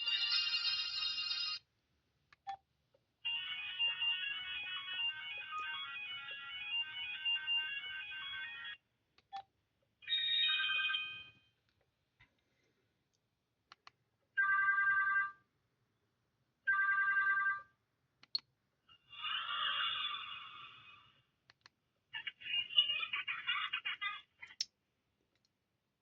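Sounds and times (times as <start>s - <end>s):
phone ringtone melody: 0.0s - 1.6s, 3.3s - 8.8s, 10.1s - 11.4s.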